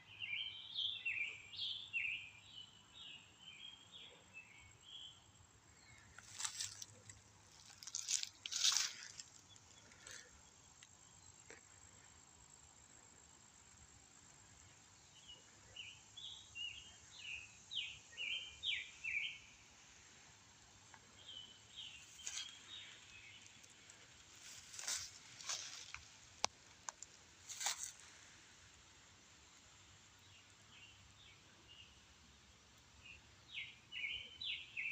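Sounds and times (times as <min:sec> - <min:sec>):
outdoor hiss: 0:12.0 - 0:34.6
bird chirping: 0:14.4 - 0:19.6, 0:32.9 - 0:34.9.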